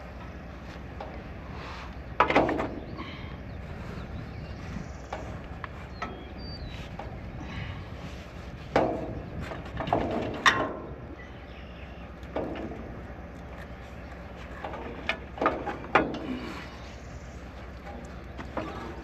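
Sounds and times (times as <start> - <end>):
tractor engine humming: 0.0 - 19.0
metal knocks and clanks: 2.2 - 2.9, 8.7 - 11.0, 12.2 - 13.0, 14.4 - 16.5.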